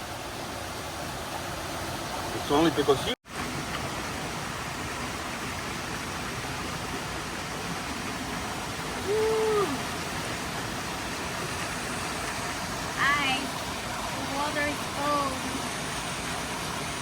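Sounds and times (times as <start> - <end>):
stream water rushing over rocks: 0.0 - 17.0
hoot-like call: 9.0 - 9.8.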